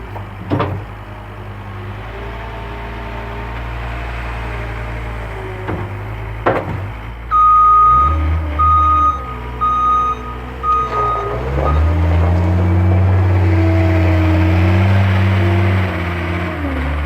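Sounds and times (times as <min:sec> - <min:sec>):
diesel engine running: 0:00.0 - 0:17.0
knocks: 0:05.7 - 0:07.0
backup alarm beeping: 0:07.3 - 0:12.0.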